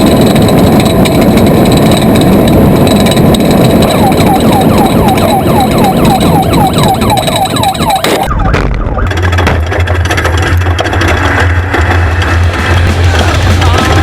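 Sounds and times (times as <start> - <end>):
race truck engine: 0.0 - 14.0
siren-like falling chirp: 3.6 - 9.3
music with heavy bass: 12.0 - 14.0.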